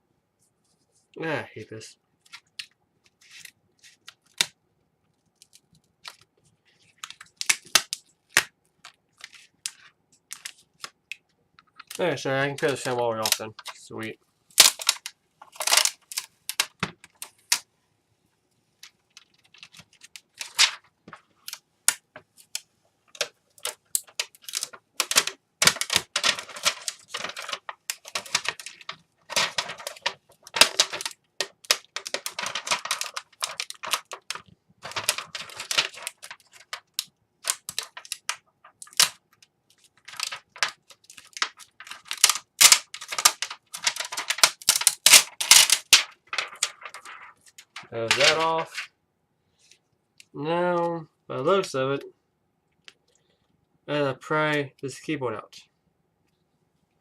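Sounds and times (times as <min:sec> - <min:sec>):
plastic film crackling: 0:05.4 - 0:11.0, 0:11.6 - 0:17.6, 0:18.8 - 0:48.9.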